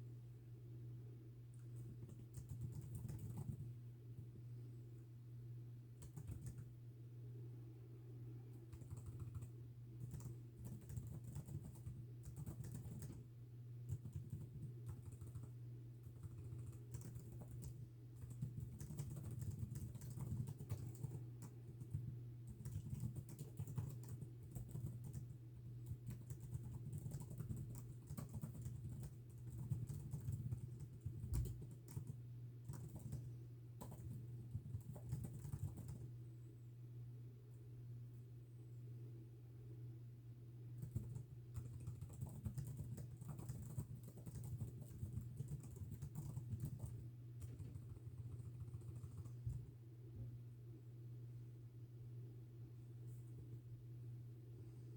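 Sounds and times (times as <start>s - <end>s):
steady low hum: 0.0s - 54.9s
fast typing on keyboard: 1.6s - 3.8s, 6.0s - 6.7s, 8.7s - 36.1s, 40.8s - 49.7s.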